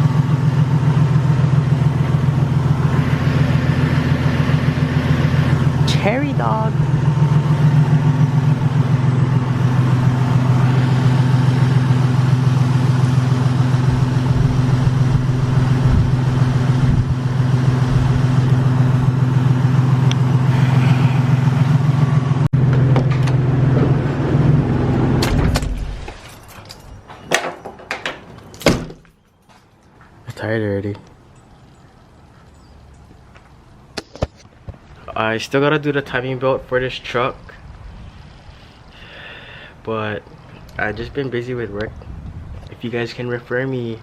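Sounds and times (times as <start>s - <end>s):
engine idling: 0.0s - 25.8s.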